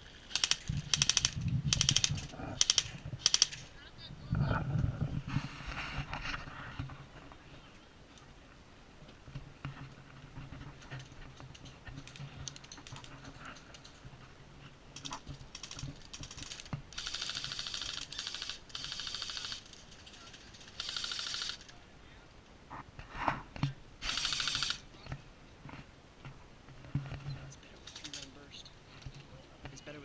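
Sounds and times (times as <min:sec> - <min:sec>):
airsoft gun clicking: 0:00.3 - 0:03.6, 0:24.0 - 0:24.8.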